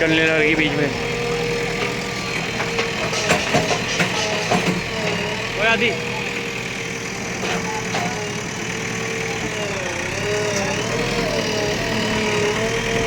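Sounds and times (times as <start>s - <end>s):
bulldozer engine running: 0.0s - 13.0s.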